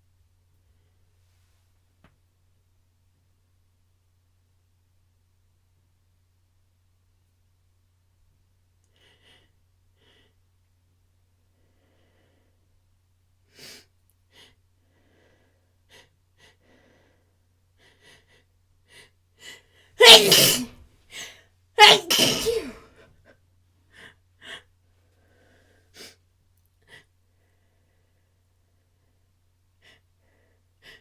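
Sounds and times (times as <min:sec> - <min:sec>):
short breaths: 0:19.4 - 0:22.8
person sneezing: 0:20.0 - 0:22.8.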